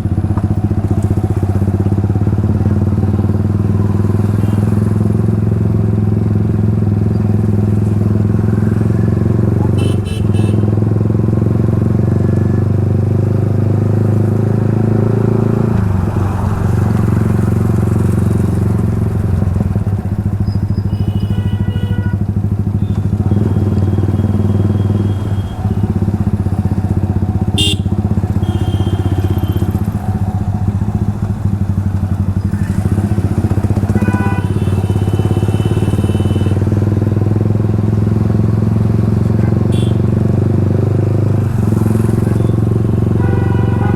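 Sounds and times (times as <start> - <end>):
motorcycle engine drone: 0.0 - 43.9
vehicle horns: 4.2 - 4.9, 9.6 - 10.9, 20.7 - 26.2, 27.4 - 30.0, 33.6 - 37.0, 39.2 - 40.2, 41.7 - 43.9.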